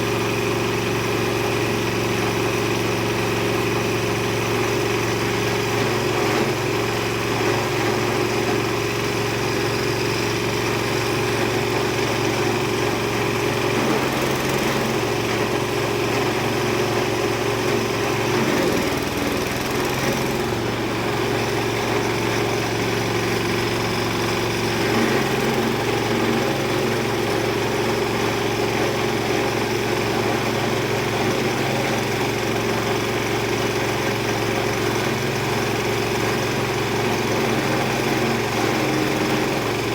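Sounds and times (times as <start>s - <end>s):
chopper grinder machine running: 0.0s - 39.9s.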